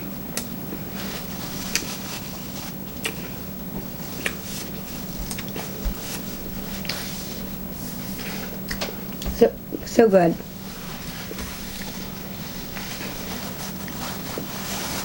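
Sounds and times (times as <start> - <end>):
steady low hum: 0.0 - 15.0
person chewing with mouth clicks: 1.6 - 2.0, 3.0 - 3.4, 4.1 - 6.0.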